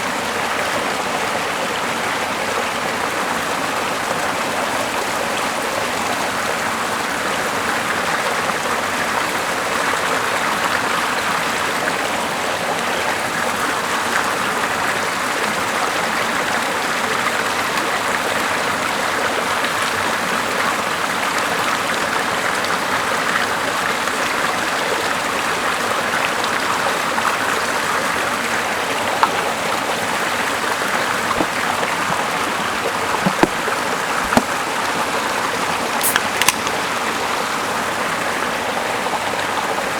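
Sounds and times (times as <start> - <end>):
running water rushing: 23.6 - 39.9.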